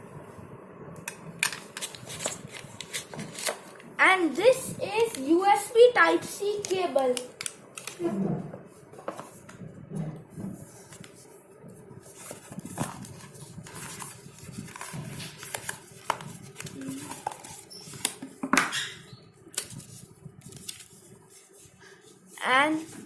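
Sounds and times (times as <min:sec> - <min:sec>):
packaging clicks and rustles: 0:01.1 - 0:03.9, 0:12.0 - 0:18.4, 0:19.5 - 0:21.5.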